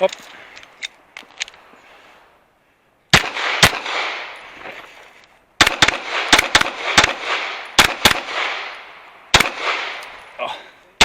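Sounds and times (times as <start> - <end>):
pistol shots with echo: 3.1 - 4.4, 5.6 - 10.2.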